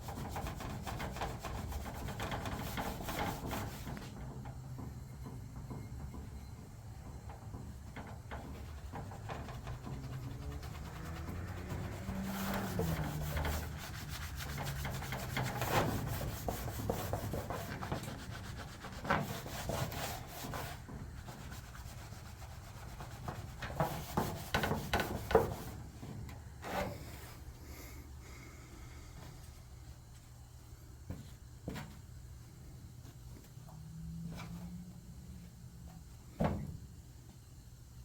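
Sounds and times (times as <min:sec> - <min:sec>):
scrubbing on metal panel: 0:00.0 - 0:27.5.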